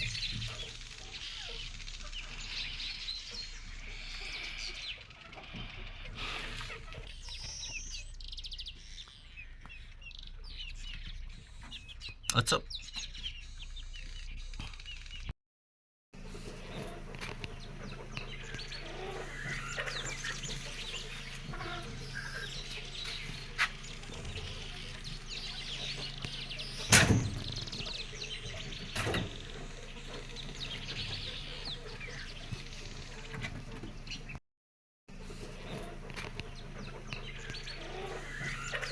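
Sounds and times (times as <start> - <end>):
chickens clucking: 0.0 - 8.1, 16.2 - 34.4, 35.1 - 38.9
small birds chirping: 0.0 - 15.3, 16.2 - 34.4, 35.1 - 38.9.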